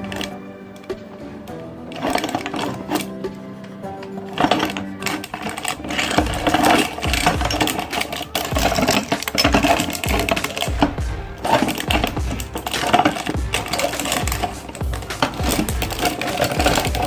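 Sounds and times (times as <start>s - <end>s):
crunchy cones crackling: 0.0s - 17.0s
auger thudding: 4.4s - 17.0s.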